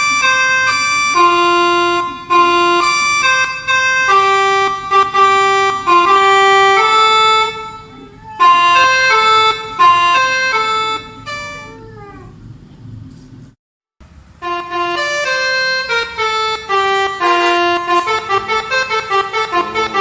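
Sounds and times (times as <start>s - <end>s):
multi-tone air horn tune: 0.0s - 11.7s, 14.4s - 20.0s.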